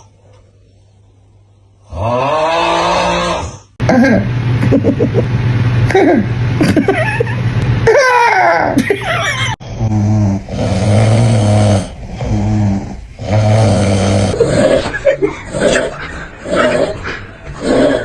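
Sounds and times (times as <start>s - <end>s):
loud snoring: 1.8s - 3.7s, 9.6s - 14.8s.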